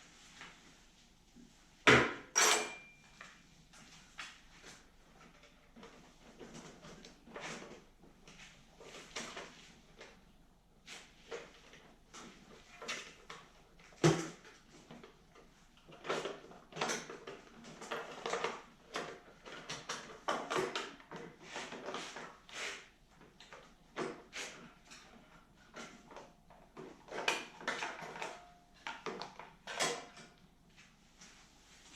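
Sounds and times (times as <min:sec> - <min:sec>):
tools and engine parts clinking: 0:02.3 - 0:03.0.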